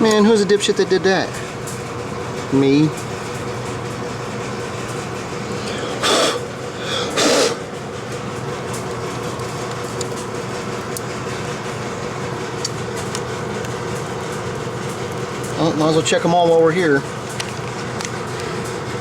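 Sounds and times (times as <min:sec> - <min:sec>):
machine hum: 0:00.0 - 0:19.0.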